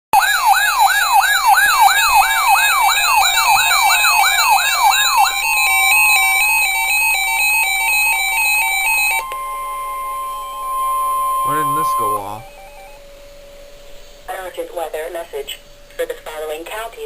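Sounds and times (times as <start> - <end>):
steady alert tone with pulsing: 0.2 - 13.0
electronic siren wailing: 0.2 - 13.6.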